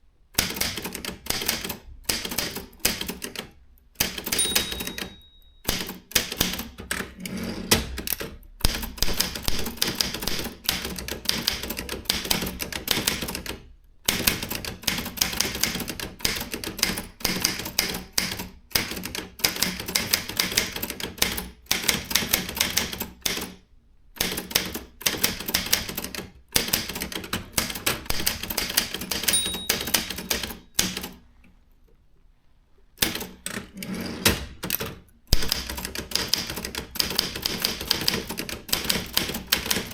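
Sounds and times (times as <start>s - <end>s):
typewriter keystrokes clacking: 0.4s - 23.6s, 24.2s - 31.2s, 34.3s - 39.9s
typewriter bell ring: 4.3s - 5.9s, 29.2s - 30.6s.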